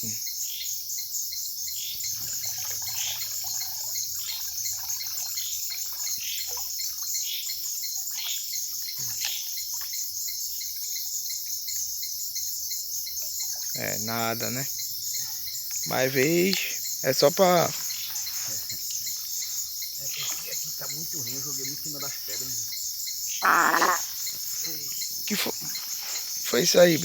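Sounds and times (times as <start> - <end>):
crickets trilling: 0.0 - 27.0
water splashing and dripping: 2.0 - 10.1.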